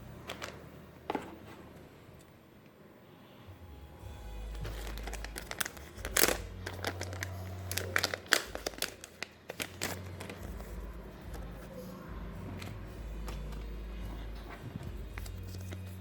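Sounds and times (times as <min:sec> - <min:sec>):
plastic packaging crinkling and tearing: 0:04.4 - 0:10.5.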